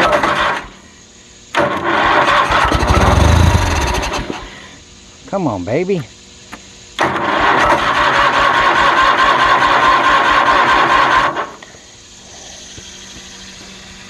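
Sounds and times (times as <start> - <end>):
engine cranking without starting: 0.0 - 0.8, 1.6 - 4.6, 7.0 - 11.7.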